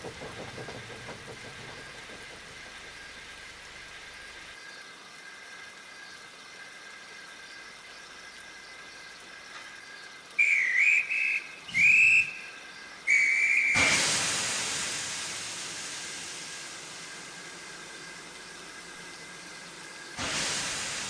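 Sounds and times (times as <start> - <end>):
steam hissing: 0.0 - 5.7, 10.4 - 21.0
steam locomotive whistle toots: 10.4 - 15.1.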